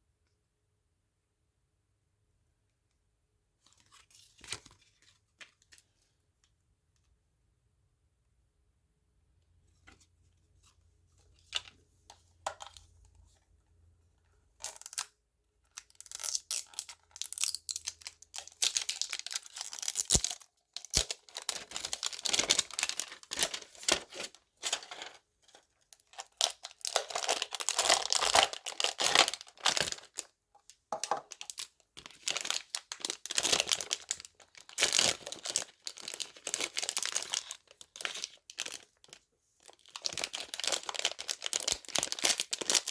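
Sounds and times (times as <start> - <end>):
packaging crinkling and tearing: 14.6 - 15.1, 15.7 - 25.2, 25.9 - 30.3, 31.0 - 42.9.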